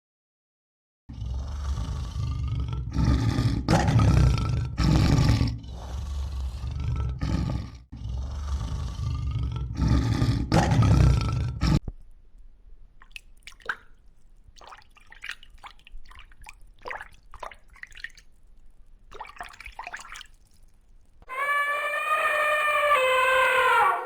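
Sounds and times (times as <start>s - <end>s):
large animal roaring: 1.1s - 11.8s.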